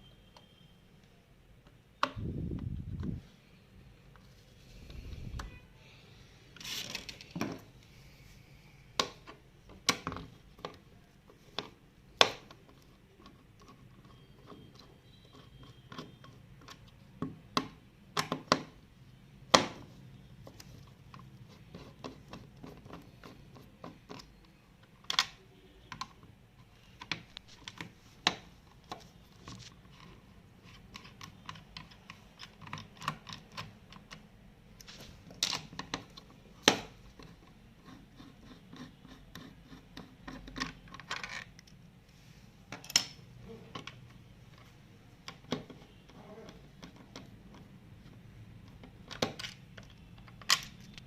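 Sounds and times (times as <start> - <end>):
hands handling pc components: 6.5 - 7.9.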